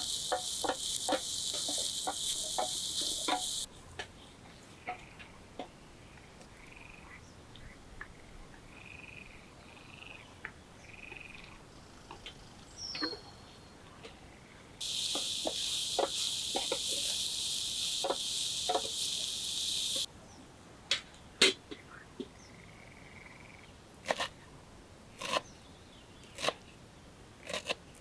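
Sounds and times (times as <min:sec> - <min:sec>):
frogs calling: 0:00.0 - 0:03.7, 0:14.8 - 0:20.1
loud steady high hiss: 0:00.0 - 0:03.7, 0:14.8 - 0:20.1.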